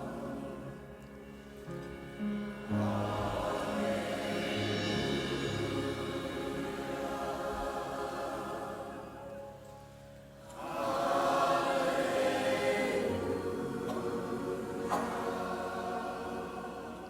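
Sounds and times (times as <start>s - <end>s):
choir singing sustained notes: 0.0s - 17.0s
worship band music: 0.0s - 17.0s.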